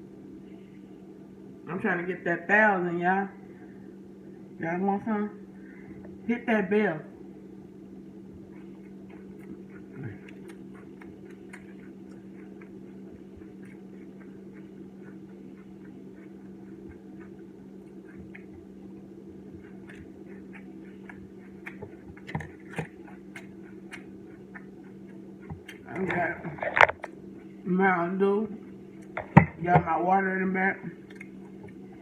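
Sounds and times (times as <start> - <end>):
low electrical hum: 0.0 - 32.0
small clicks and taps: 19.6 - 24.7.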